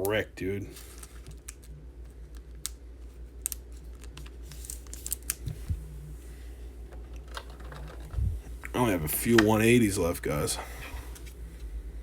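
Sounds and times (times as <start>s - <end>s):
trading cards being handled: 0.0s - 6.0s
steady low hum: 0.0s - 12.0s.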